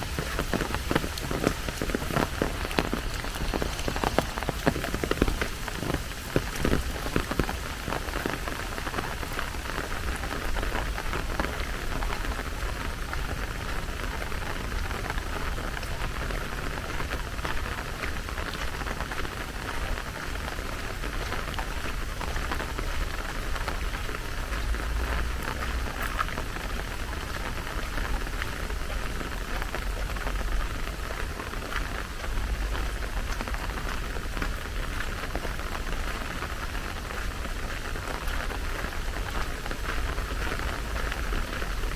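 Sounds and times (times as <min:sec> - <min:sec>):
steady rain falling: 0:00.0 - 0:41.9.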